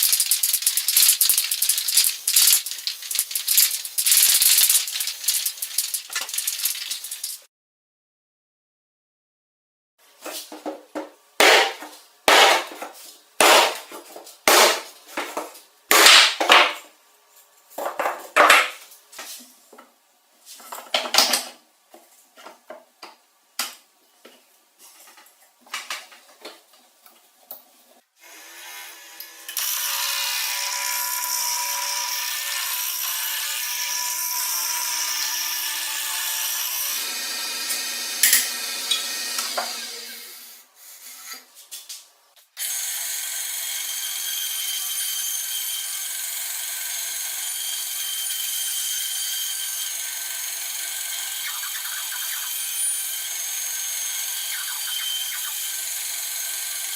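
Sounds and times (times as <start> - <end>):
power tool running: 42.6 - 56.9.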